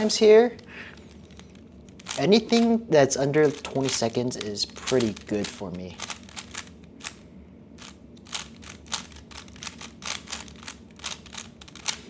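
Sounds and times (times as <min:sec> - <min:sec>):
puzzle cube layers clicking: 0:01.1 - 0:02.7, 0:03.4 - 0:07.2, 0:07.8 - 0:12.0.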